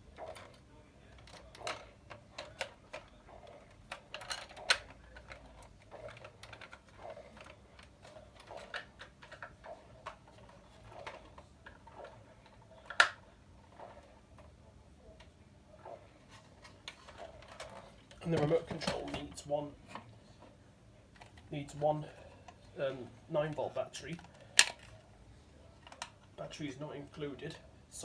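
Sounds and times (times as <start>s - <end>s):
plastic clicks and rattles: 1.2s - 13.2s, 16.3s - 20.2s, 21.1s - 21.5s, 23.5s - 25.0s, 25.8s - 26.3s.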